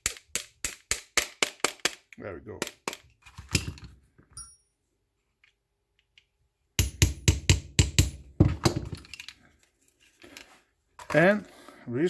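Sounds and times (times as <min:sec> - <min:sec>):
hammer tapping metal punch: 0:06.8 - 0:08.2.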